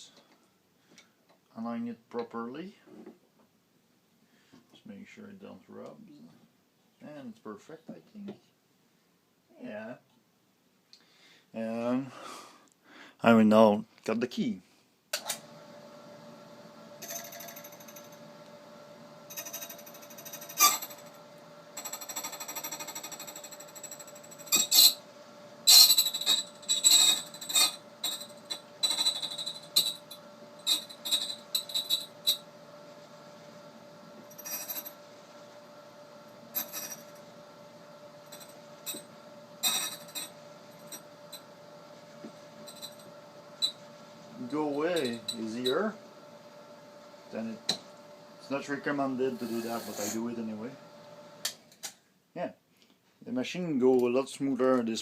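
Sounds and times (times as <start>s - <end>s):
motor hum: 15.3s - 49.6s.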